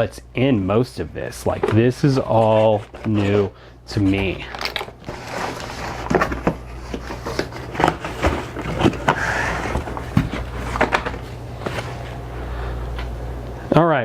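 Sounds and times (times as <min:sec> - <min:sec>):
low steady hum: 0:00.0 - 0:14.0
boxes being handled and packed: 0:01.3 - 0:13.1
packaging rustle: 0:04.4 - 0:11.8.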